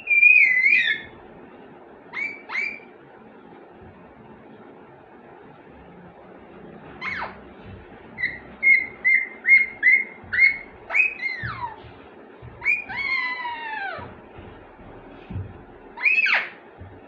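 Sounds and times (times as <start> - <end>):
parrot whistling calls: 0.0 - 1.2, 2.1 - 2.9, 7.0 - 7.4, 8.2 - 11.8, 12.6 - 14.1, 16.0 - 16.6.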